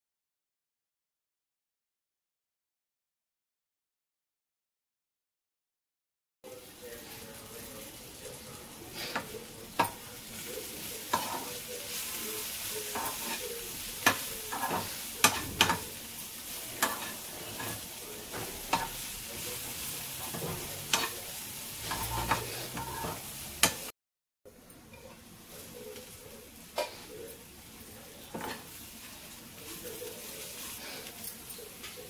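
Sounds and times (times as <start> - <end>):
food sizzling in a pan: 6.5 - 23.9, 24.5 - 32.0
metal spoon scraping a pan: 8.2 - 23.9, 24.9 - 32.0.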